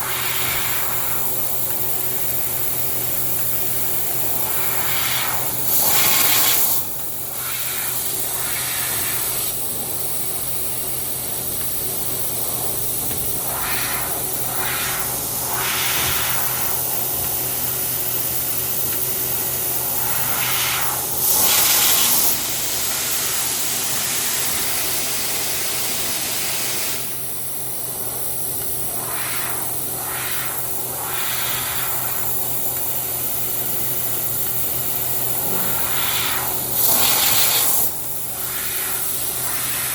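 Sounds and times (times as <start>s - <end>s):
machine hum and high whine: 0.0s - 39.9s
hissing air: 35.0s - 39.9s.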